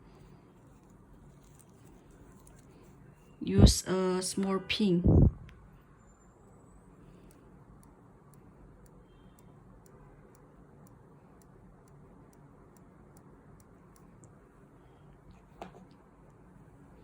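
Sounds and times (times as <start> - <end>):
watch ticking: 7.2 - 14.5.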